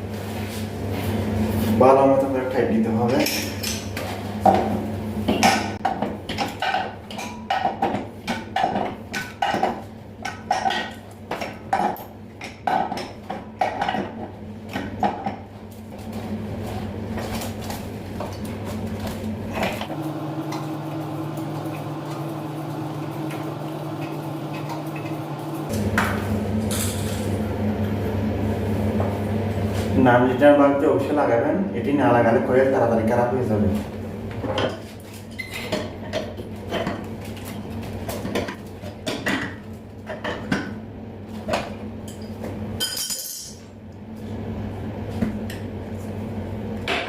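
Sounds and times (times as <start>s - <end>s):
steady hum: 9.8s - 47.0s.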